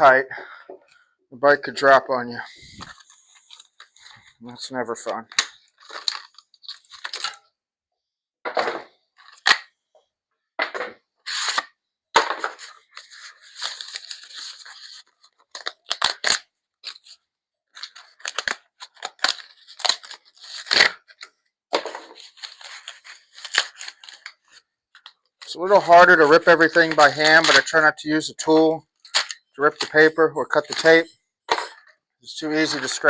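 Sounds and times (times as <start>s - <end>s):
paper rustling: 2.5s - 4.4s, 12.3s - 21.2s, 21.8s - 27.9s, 28.5s - 31.1s, 32.4s - 33.0s
paper and tape tearing: 11.2s - 11.8s, 12.6s - 17.2s, 17.8s - 21.3s, 22.1s - 24.6s, 25.5s - 27.9s, 29.0s - 31.1s.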